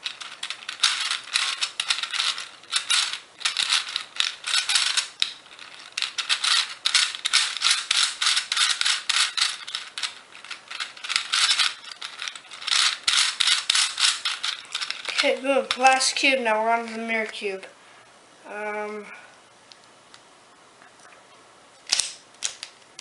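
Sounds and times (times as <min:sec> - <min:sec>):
puzzle cube clicking turns: 0:00.0 - 0:16.0, 0:21.8 - 0:23.0.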